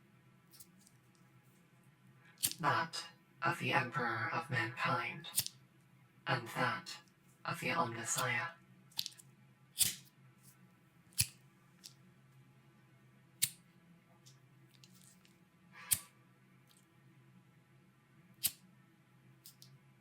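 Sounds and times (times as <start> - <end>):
small hard objects clicking: 8.9 - 10.0.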